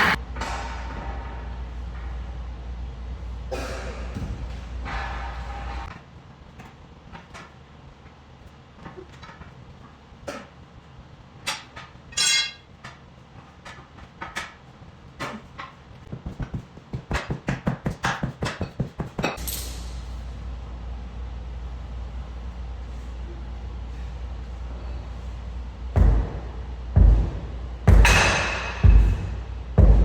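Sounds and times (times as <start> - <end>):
low machine hum: 0.0 - 7.1, 19.4 - 30.0
tire tools clanking on metal rim: 11.5 - 13.0.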